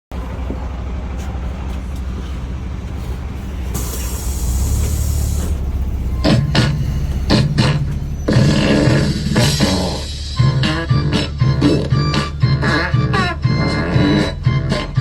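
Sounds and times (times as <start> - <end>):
bus engine rumbling: 0.1 - 15.0
air hiss: 3.7 - 5.7
loud low thumps: 5.8 - 15.0.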